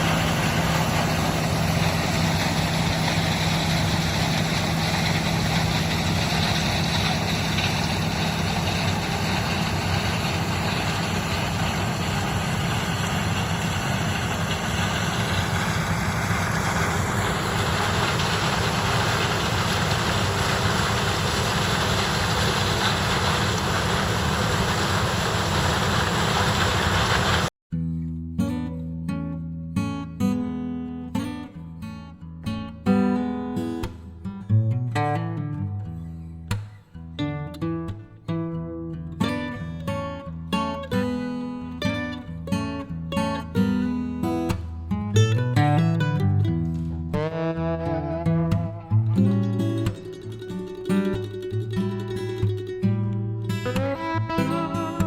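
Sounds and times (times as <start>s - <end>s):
combine engine hum: 0.0s - 27.5s
dense mechanical noise: 0.0s - 27.5s.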